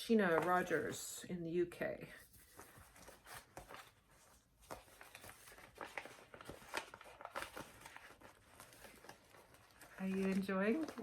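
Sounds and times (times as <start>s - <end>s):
paper rustling and crinkling: 0.1s - 1.0s, 2.2s - 11.0s.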